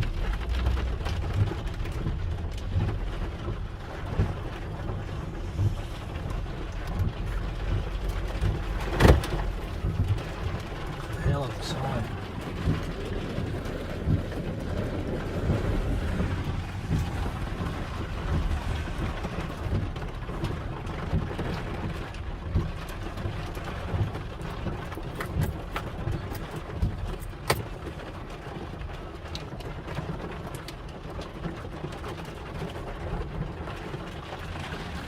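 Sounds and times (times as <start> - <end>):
hailstones hitting vehicle: 0.0 - 35.0
low rumble of vehicle and wind: 0.0 - 35.0
heavy rain hiss: 4.0 - 19.8.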